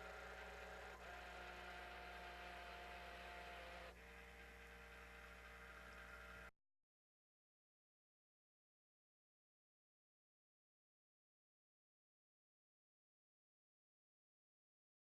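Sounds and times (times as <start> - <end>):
faint steady hum: 0.0 - 6.5.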